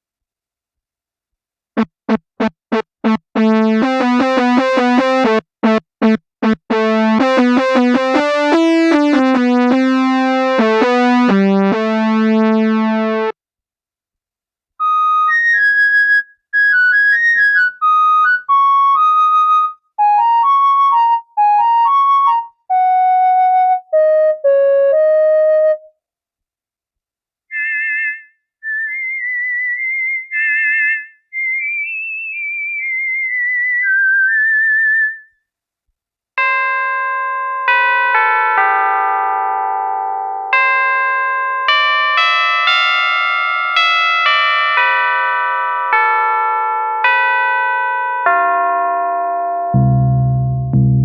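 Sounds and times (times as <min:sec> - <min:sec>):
synthesizer lead melody: 0:01.8 - 0:13.4, 0:16.8 - 0:26.0, 0:27.5 - 0:31.1, 0:49.7 - 0:51.0.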